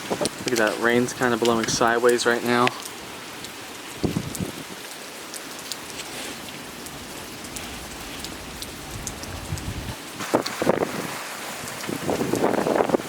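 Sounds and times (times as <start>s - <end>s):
low gusty rumbles: 0.0s - 4.8s, 5.8s - 13.0s
wind-driven rain: 0.0s - 13.0s
drops ticking: 0.2s - 9.8s.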